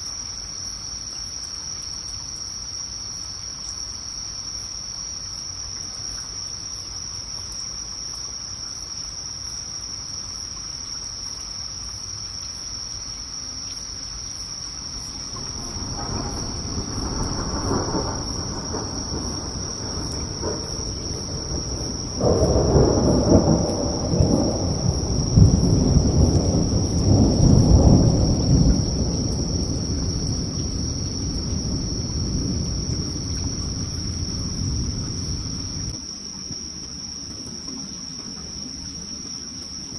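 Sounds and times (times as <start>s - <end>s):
night insects chirring: 0.0s - 39.9s
thunder rolling: 15.0s - 36.0s.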